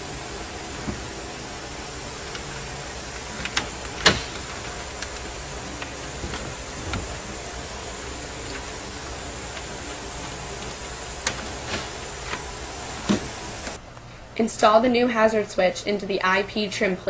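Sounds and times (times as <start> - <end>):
steady hiss: 0.0 - 15.3
plastic parts clicking: 0.6 - 13.8.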